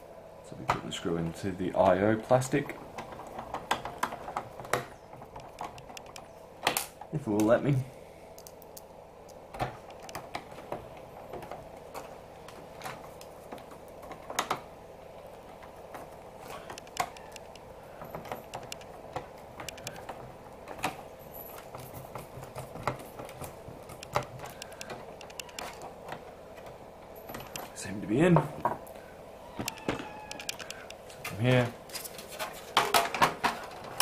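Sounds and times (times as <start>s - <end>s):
faint hum: 0.0s - 34.0s
plastic and metal parts knocking: 2.9s - 6.8s.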